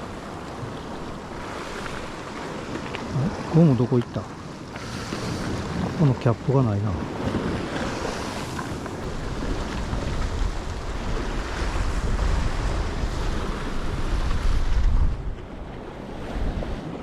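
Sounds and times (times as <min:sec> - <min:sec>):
waves on rocky shore: 0:00.0 - 0:17.0
wind rumbling on microphone: 0:04.2 - 0:17.0.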